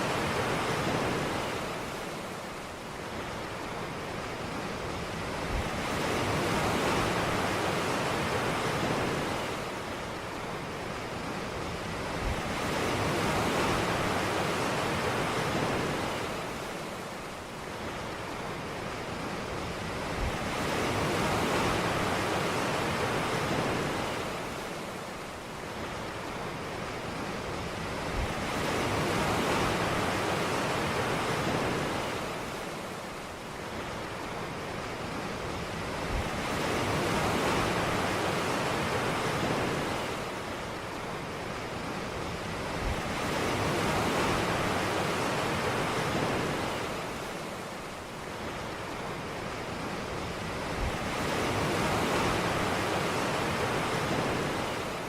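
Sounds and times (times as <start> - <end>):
ocean surf breaking: 28.1 - 55.0.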